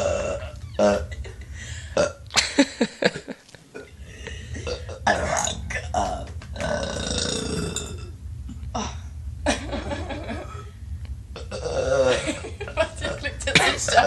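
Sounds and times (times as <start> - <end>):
person belching: 0.0 - 1.2, 4.6 - 8.1, 11.4 - 12.2.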